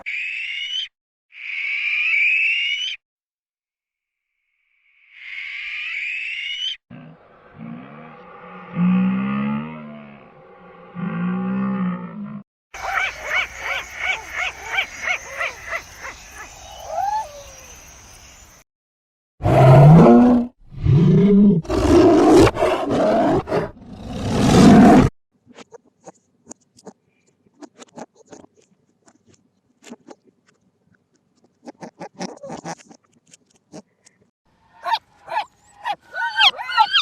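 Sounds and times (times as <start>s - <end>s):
animal roaring: 6.9s - 12.4s, 19.4s - 25.1s
high yelping calls: 12.8s - 17.8s, 34.8s - 37.0s.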